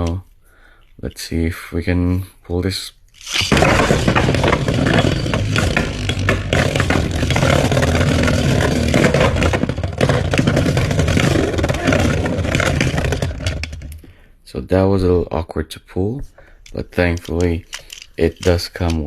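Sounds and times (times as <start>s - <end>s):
spinning tops launching: 3.2s - 14.0s
spinning tops whirring and clattering: 3.2s - 14.0s.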